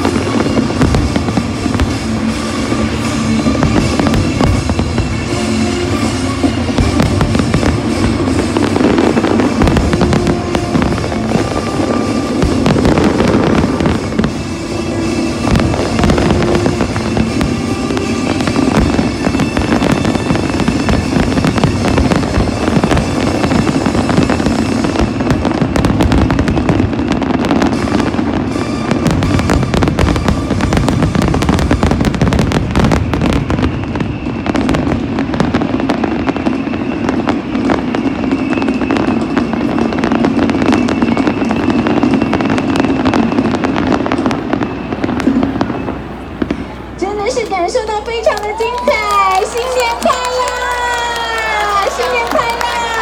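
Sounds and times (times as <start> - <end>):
loud music: 0.0 - 26.3
fireworks bangs and crackling: 0.0 - 53.0.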